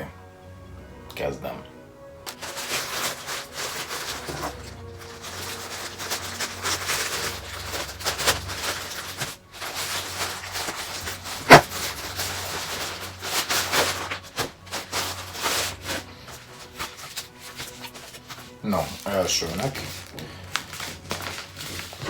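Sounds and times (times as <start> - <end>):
envelopes rustling: 0.0 - 22.0.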